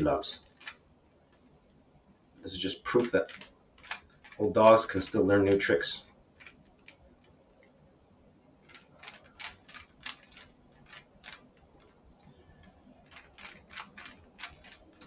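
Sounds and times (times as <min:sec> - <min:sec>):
puzzle cube clicking as twisted: 0:00.4 - 0:00.8, 0:03.0 - 0:05.7, 0:06.4 - 0:07.4, 0:08.6 - 0:12.0, 0:12.6 - 0:15.0.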